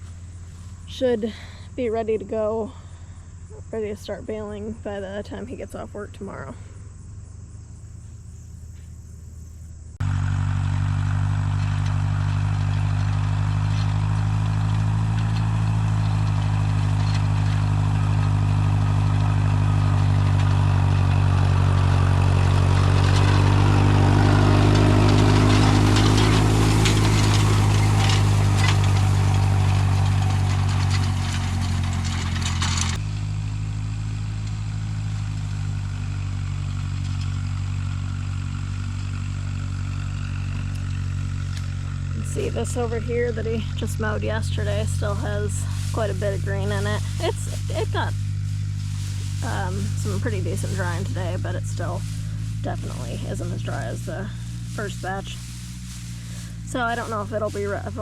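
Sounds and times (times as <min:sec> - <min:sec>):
tractor engine running: 0:00.0 - 0:58.0
mechanical clatter: 0:10.0 - 0:33.3.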